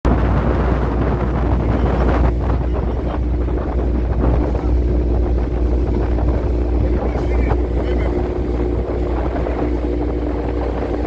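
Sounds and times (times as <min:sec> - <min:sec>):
wind buffeting microphone: 0:00.0 - 0:11.0
motorboat engine drone: 0:00.1 - 0:11.0.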